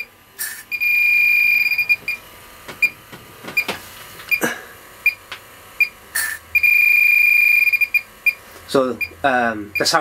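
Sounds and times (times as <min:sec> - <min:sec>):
leak detector beeping: 0:00.0 - 0:02.2, 0:05.0 - 0:05.2, 0:05.8 - 0:08.4, 0:09.0 - 0:10.0.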